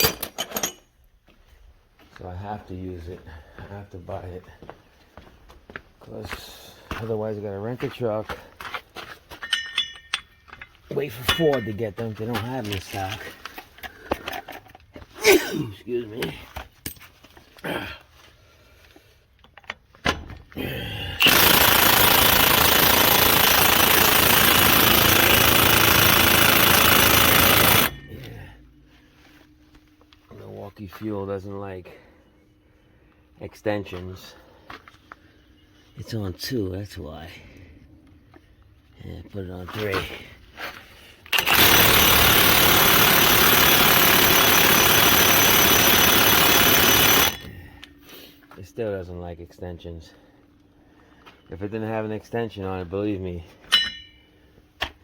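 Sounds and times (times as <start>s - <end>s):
impact wrench hammering on bolt: 21.2s - 28.1s, 41.4s - 47.5s.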